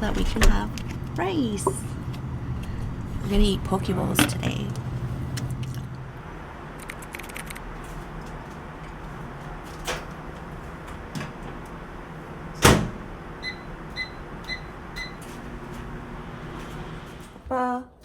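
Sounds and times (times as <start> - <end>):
car engine running: 0.0 - 6.6.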